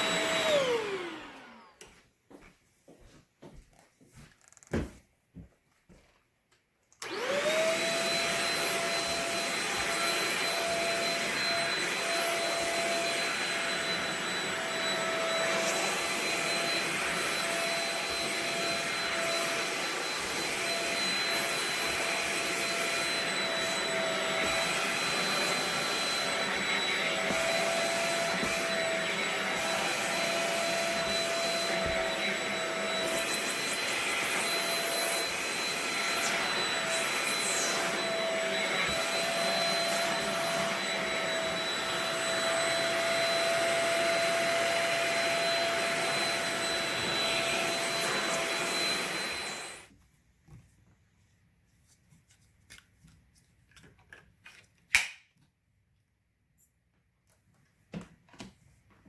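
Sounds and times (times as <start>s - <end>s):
vacuum cleaner motor whine: 0.0s - 2.0s, 7.0s - 49.9s.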